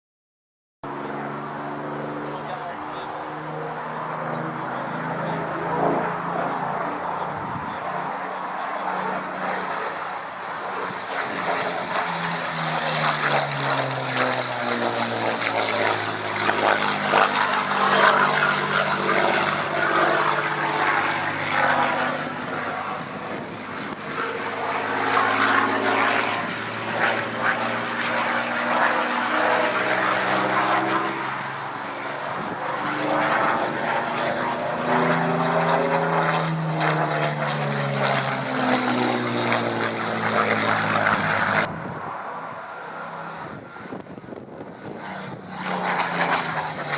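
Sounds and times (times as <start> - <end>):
propeller plane engine flypast: 0.8 - 46.9.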